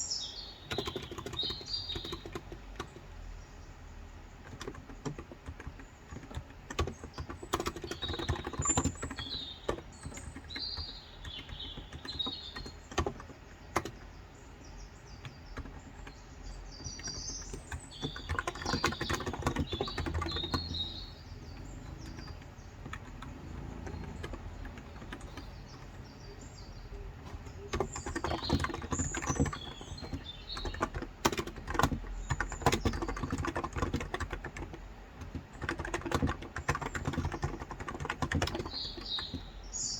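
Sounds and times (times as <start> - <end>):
birds chirping: 0.0 - 39.9
keyboard typing: 0.5 - 3.2, 4.3 - 39.7.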